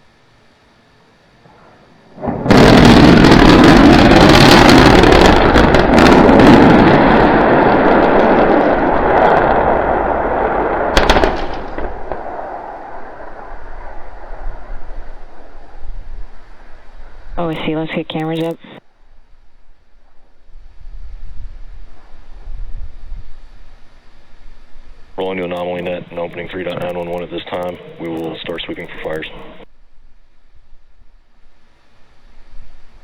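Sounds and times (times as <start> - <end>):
rumble: 0.0 - 33.0
rocket explosion blast and roar: 2.1 - 18.4, 24.7 - 29.7
sharp bang: 10.9 - 15.8.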